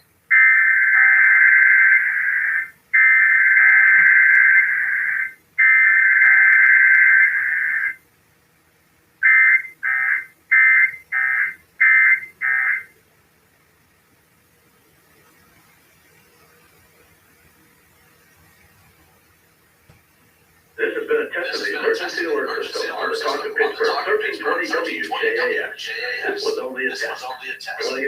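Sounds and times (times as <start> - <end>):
warbling data tone bursts: 0.0 - 8.0, 9.2 - 13.0, 20.8 - 28.0.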